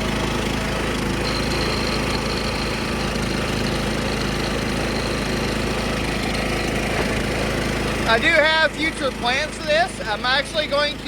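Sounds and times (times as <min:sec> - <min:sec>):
lawn tractor engine running: 0:00.0 - 0:11.0
thin high whine: 0:01.2 - 0:03.5.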